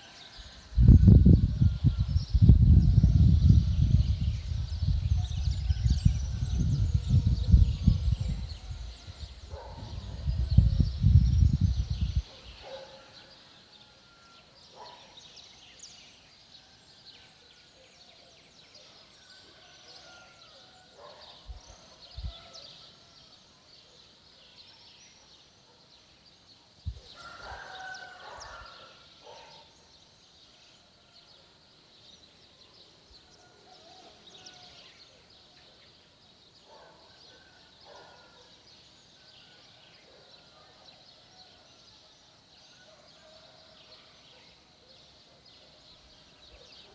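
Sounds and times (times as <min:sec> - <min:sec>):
birds chirping: 0:00.0 - 0:15.9.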